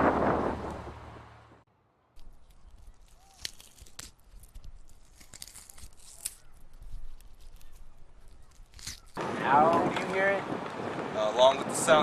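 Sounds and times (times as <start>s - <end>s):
wet crunching and tearing: 2.2s - 9.2s.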